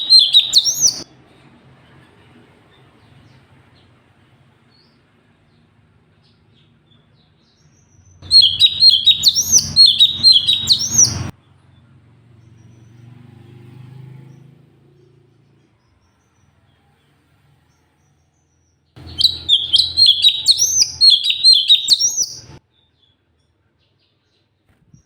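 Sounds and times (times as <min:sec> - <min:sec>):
songbird whistling: 0:00.0 - 0:01.1, 0:08.2 - 0:11.3, 0:19.0 - 0:22.6.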